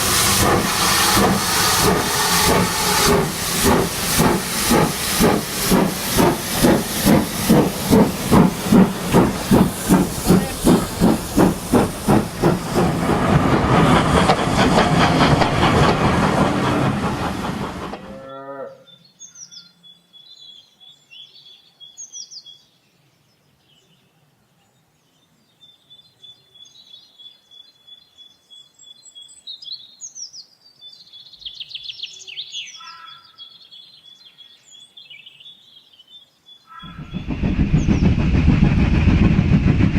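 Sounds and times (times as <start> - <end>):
rush of steam: 0.0 - 18.1, 36.8 - 39.9
steam locomotive chuffing: 0.0 - 18.2, 36.8 - 39.9
birdsong with chirps and whistles: 18.7 - 37.2.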